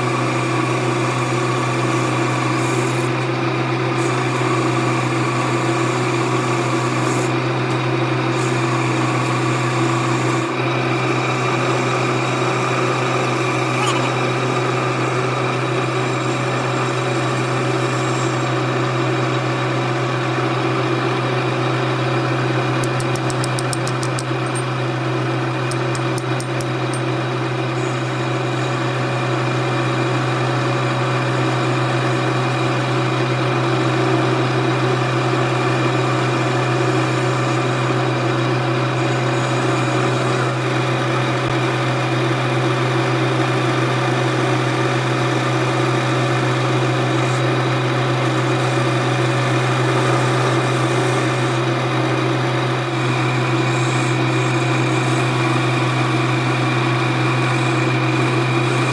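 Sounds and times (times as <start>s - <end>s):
machine motor humming: 4.0s - 19.9s, 21.0s - 30.4s, 46.1s - 58.9s
fast light ticking: 22.8s - 24.7s, 25.7s - 27.1s.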